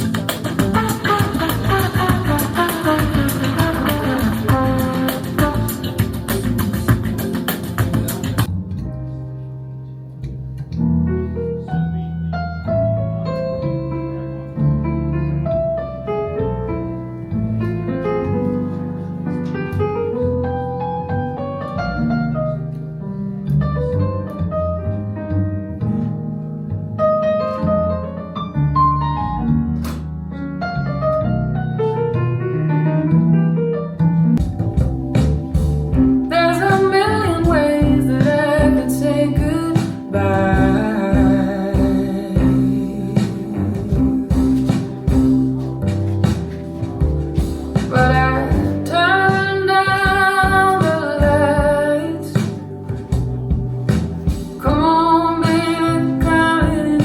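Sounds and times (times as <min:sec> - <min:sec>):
bass line: 0:00.0 - 0:57.0
guitar: 0:00.0 - 0:57.0
piano melody over loudspeakers: 0:00.0 - 0:57.0
person singing long notes: 0:37.0 - 0:45.6.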